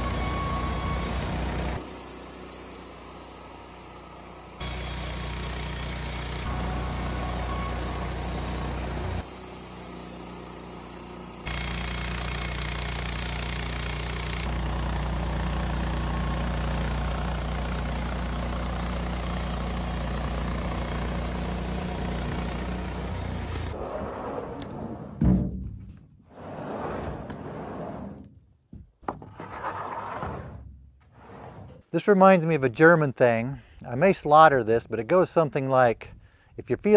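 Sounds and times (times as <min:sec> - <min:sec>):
band sawmill running: 0:00.0 - 0:23.8.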